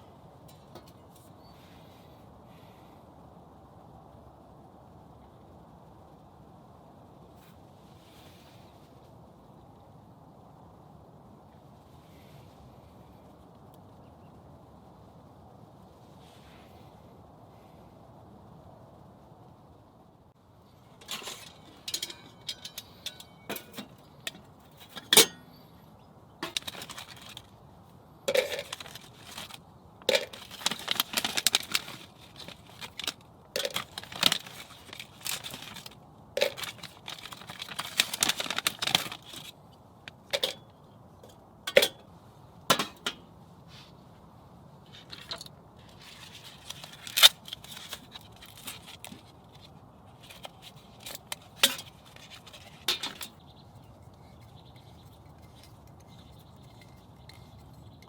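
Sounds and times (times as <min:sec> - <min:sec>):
scraping and rustling: 0:20.8 - 0:25.3, 0:26.4 - 0:27.6, 0:28.3 - 0:40.6, 0:44.8 - 0:58.0
clinks of small hard objects: 0:21.0 - 0:25.5, 0:28.3 - 0:39.5.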